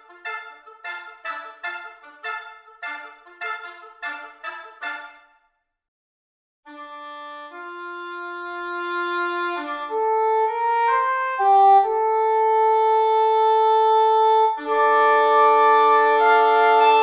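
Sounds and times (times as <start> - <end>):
woodwind slow melody: 0.0 - 5.3, 6.7 - 17.0
woodwinds sustained chord: 6.7 - 17.0.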